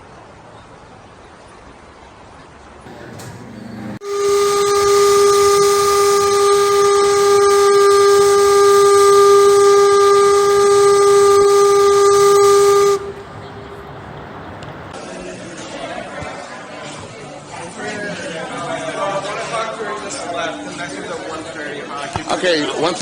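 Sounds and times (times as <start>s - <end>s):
steam whistle blast: 2.9s - 13.8s.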